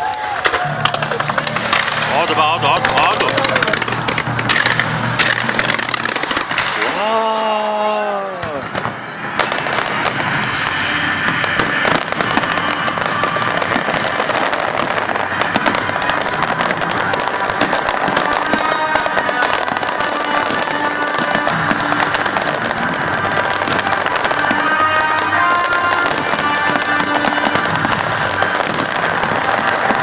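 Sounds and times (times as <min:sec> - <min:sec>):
fireworks bangs and crackling: 0:00.0 - 0:30.0
person crying out: 0:06.8 - 0:08.6.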